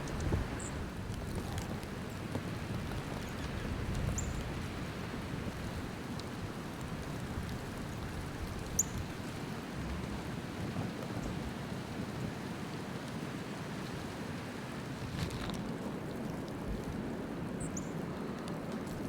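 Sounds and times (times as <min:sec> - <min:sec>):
small bird chirp: 0:08.8 - 0:09.0.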